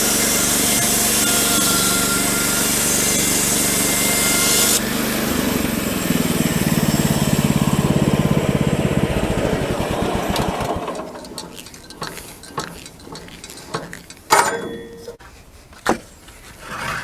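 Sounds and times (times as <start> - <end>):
small gas engine running: 2.6 - 14.7
sharp knocks: 10.4 - 15.2.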